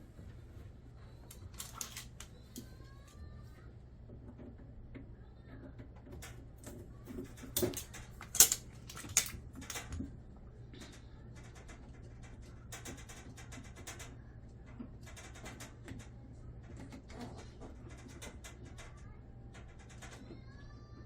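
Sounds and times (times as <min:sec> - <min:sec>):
low steady hum: 0:00.0 - 0:21.0
tools clicking and clinking: 0:01.6 - 0:02.3, 0:06.2 - 0:10.0.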